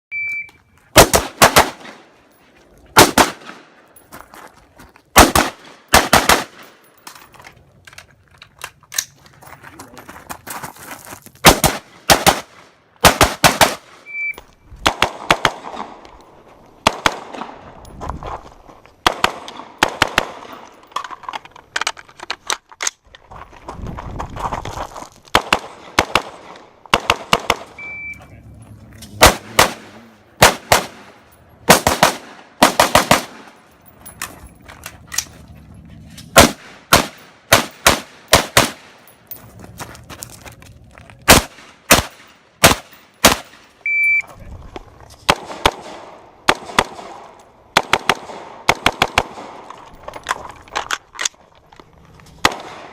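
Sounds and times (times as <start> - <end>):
shot timer beep: 0.1 - 0.6, 14.0 - 14.4, 27.8 - 28.3, 43.8 - 44.3
rifle shots: 1.0 - 2.1, 3.0 - 3.7, 5.2 - 6.8, 11.4 - 14.0, 14.8 - 16.0, 16.8 - 17.6, 19.0 - 20.6, 25.3 - 27.8, 29.1 - 33.6, 36.3 - 39.0, 41.3 - 43.6, 45.3 - 49.7, 52.4 - 52.9.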